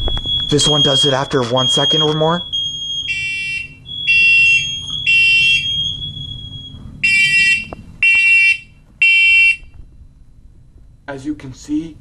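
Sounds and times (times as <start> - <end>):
steady high tone: 0.0 - 9.6
smoke alarm beeps: 0.0 - 9.7.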